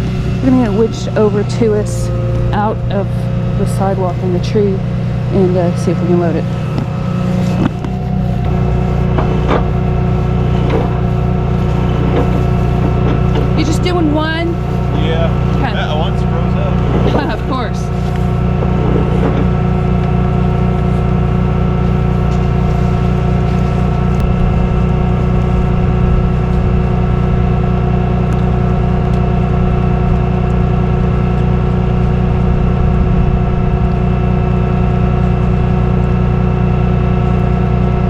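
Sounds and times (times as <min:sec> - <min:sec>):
truck engine droning: 0:00.0 - 0:38.0.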